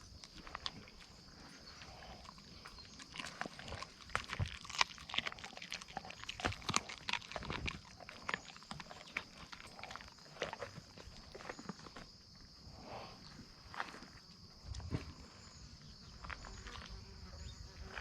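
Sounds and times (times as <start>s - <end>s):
bones cracking and crunching: 0.0s - 12.2s
dogs chewing meat: 0.0s - 12.3s.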